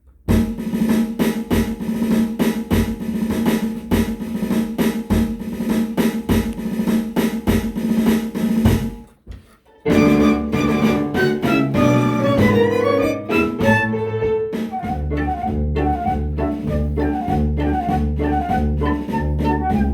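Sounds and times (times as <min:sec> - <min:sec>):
steady drum beat: 0:00.0 - 0:09.3, 0:09.9 - 0:19.9
melody: 0:09.9 - 0:14.5
bass line: 0:09.9 - 0:19.9.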